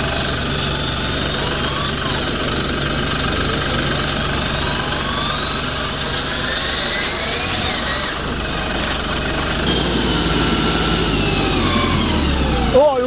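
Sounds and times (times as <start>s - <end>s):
engine whine: 0.0s - 13.0s
tractor engine running: 0.0s - 13.0s.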